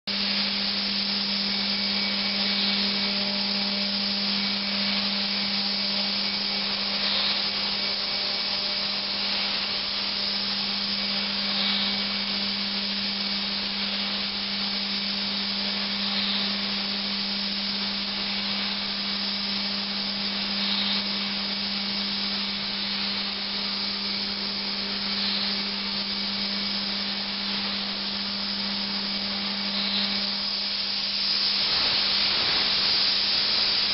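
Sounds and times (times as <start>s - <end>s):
machine low hum: 0.1s - 33.9s
milling cutter hissing: 0.1s - 33.9s.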